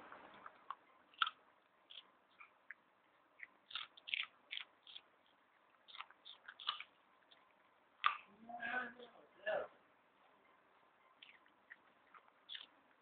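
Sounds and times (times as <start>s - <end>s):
dog crunching a carrot: 0.2s - 8.3s, 11.2s - 13.0s.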